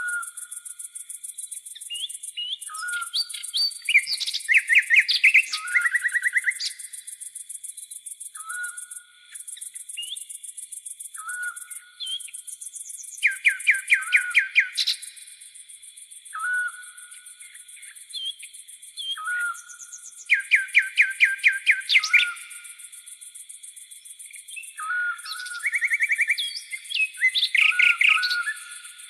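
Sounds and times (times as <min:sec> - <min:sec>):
bird chirping: 0:00.0 - 0:29.0
insects trilling: 0:00.0 - 0:29.0
bird whistling: 0:01.9 - 0:06.8, 0:08.4 - 0:08.9, 0:11.2 - 0:12.3, 0:13.2 - 0:14.9, 0:16.4 - 0:17.0, 0:19.0 - 0:22.4, 0:24.5 - 0:28.9.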